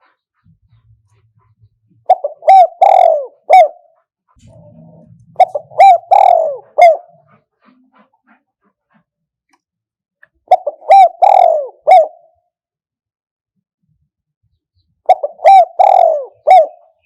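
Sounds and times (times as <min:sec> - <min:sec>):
dove cooing: 0:00.0 - 0:08.4, 0:10.5 - 0:12.4, 0:15.1 - 0:17.0.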